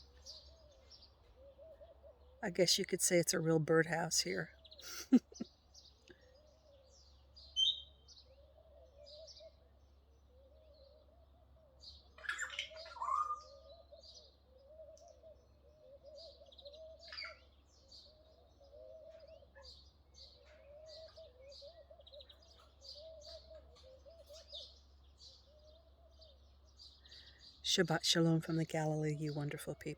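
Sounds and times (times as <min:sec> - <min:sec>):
doves cooing: 0:00.0 - 0:03.1, 0:08.2 - 0:09.7, 0:10.3 - 0:24.8
small birds chirping: 0:00.0 - 0:29.9.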